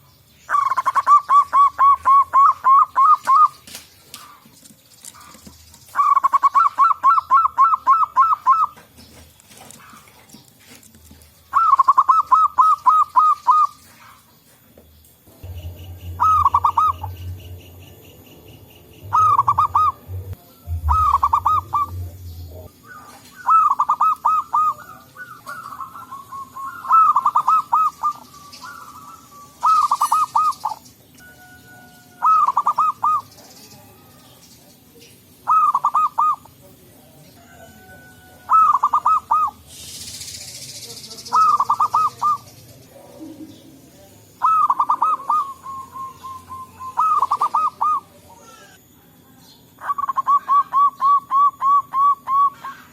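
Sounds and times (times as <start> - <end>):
dove cooing: 0.0 - 14.3, 15.4 - 34.1, 35.4 - 36.6, 37.4 - 39.9, 41.3 - 48.8, 49.8 - 52.9
faint bird chirps: 0.0 - 52.9
low rumble: 15.3 - 22.8.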